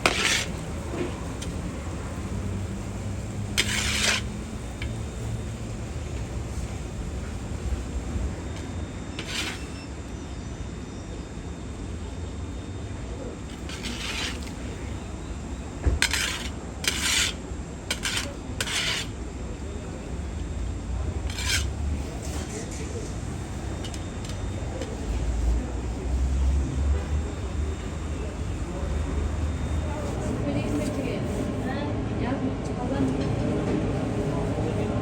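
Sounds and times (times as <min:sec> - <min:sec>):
short scraping strokes: 0:00.0 - 0:00.6, 0:03.6 - 0:04.3, 0:09.2 - 0:09.8, 0:13.5 - 0:14.7, 0:16.0 - 0:19.2, 0:21.2 - 0:21.8.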